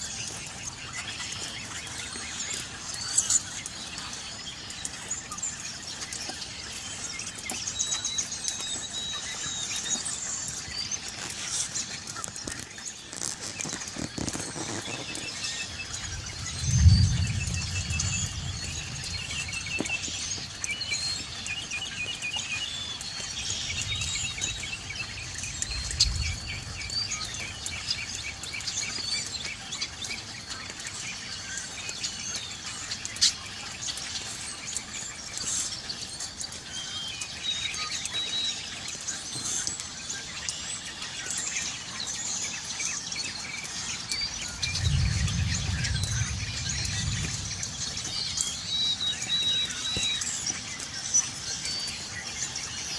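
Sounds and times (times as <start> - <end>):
songbirds chirping and singing: 0.0 - 52.9
distant thunder rumble: 14.2 - 21.3, 44.4 - 49.8.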